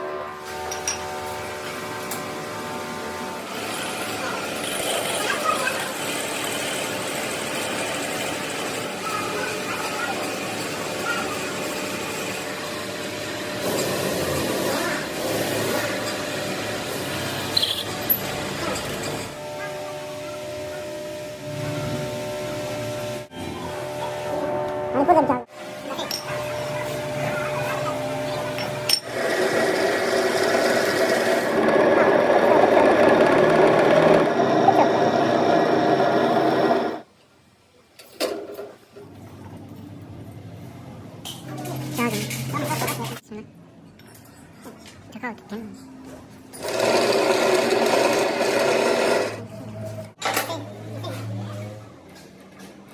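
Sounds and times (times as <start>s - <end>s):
metalworking machine humming: 0.0s - 37.1s, 46.5s - 50.1s
metal lathe humming: 28.0s - 37.0s.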